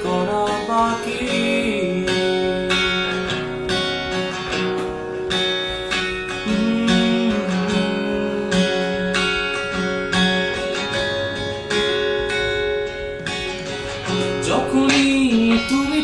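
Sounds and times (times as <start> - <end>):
acoustic guitar strumming: 0.0 - 16.0.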